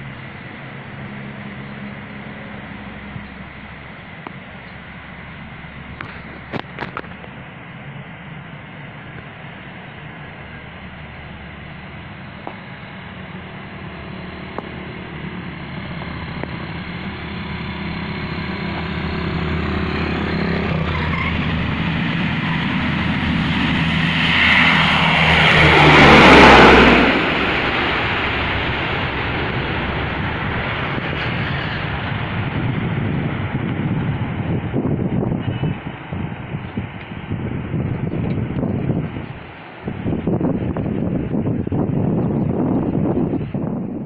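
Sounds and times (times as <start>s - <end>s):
turboprop aircraft passing: 0.0s - 44.0s.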